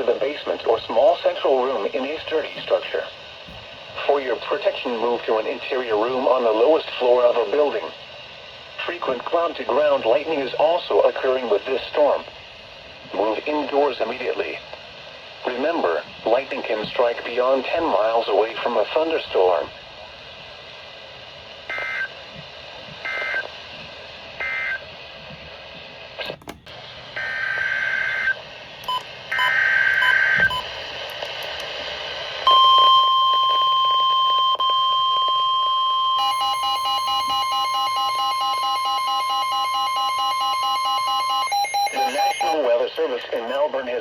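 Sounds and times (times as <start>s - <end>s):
steady warning alarm tone: 27.2s - 30.6s, 32.5s - 42.7s.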